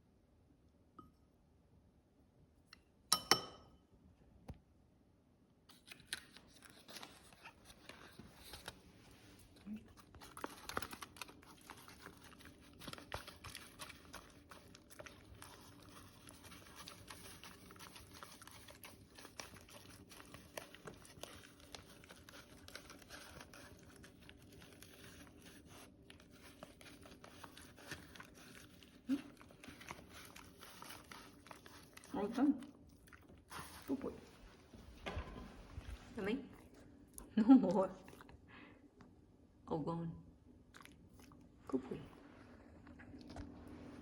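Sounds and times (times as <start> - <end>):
food pack crinkling: 5.7 - 34.6
dog chewing food: 9.5 - 37.3, 40.7 - 41.5.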